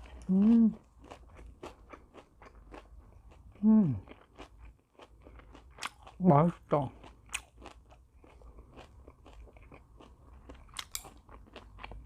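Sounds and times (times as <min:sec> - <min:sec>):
person chewing food: 0:00.0 - 0:12.0.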